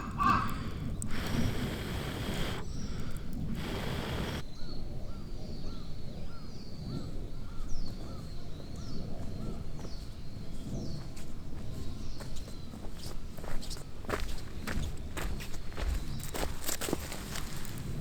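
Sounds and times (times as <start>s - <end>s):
short animal calls: 0.0s - 4.4s.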